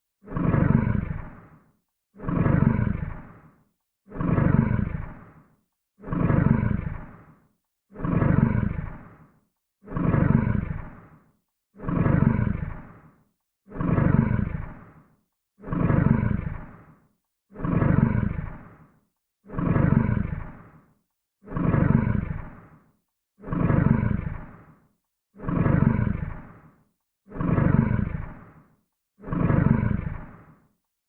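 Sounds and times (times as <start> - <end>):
large creature breathing heavily: 0.2 - 9.3, 9.9 - 11.2, 11.8 - 17.0, 19.6 - 20.8, 27.3 - 30.6.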